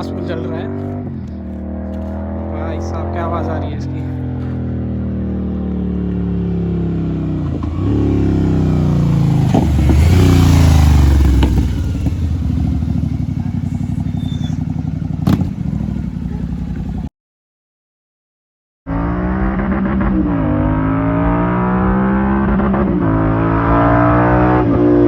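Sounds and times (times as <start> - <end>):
motorcycle engine revving: 0.0 - 17.1, 18.9 - 25.0
sharp exhaust pop: 11.2 - 12.2, 15.2 - 16.0.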